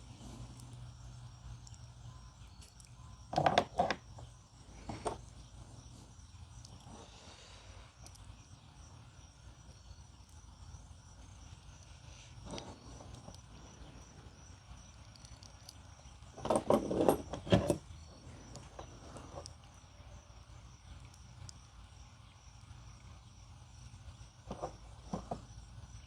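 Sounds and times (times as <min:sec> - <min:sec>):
crickets chirping: 0:00.0 - 0:26.0.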